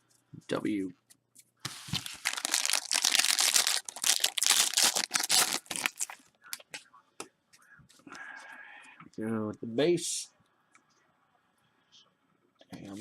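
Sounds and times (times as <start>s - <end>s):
foil wrapper tearing and crinkling: 1.7s - 6.2s.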